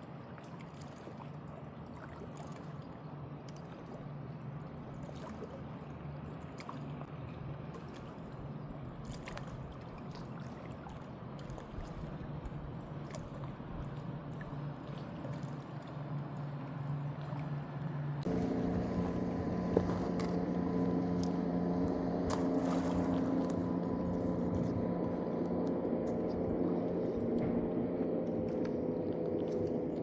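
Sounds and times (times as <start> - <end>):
engine droning: 14.2 - 30.0.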